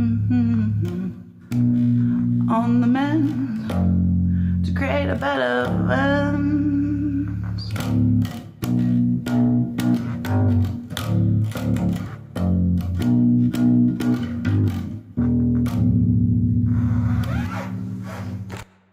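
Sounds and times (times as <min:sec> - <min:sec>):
electric bass guitar riff: 0:00.0 - 0:18.6.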